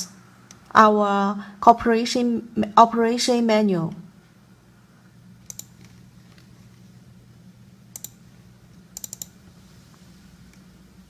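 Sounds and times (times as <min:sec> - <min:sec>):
faint low hum: 0:00.0 - 0:11.0
computer mouse clicks: 0:05.4 - 0:06.5, 0:07.9 - 0:08.2, 0:09.0 - 0:09.5.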